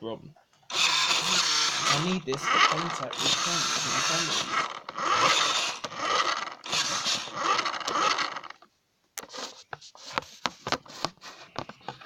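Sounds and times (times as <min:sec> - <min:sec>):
toy car motor whirring: 0:00.7 - 0:10.2.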